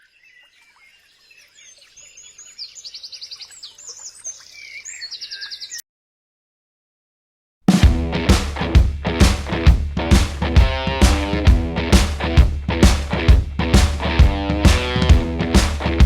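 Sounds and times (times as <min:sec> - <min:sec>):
birds chirping and singing: 0:00.0 - 0:05.8.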